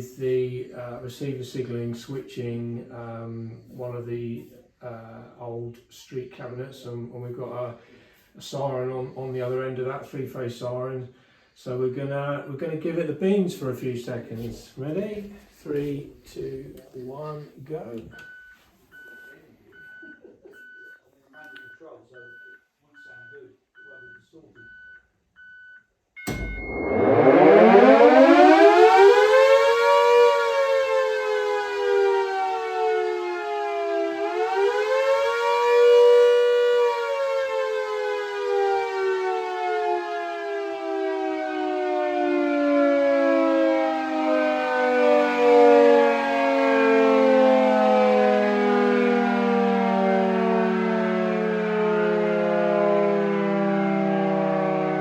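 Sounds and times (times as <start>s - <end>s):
electronic beep: 26.2s - 27.0s
electric siren winding up and down: 26.2s - 55.0s.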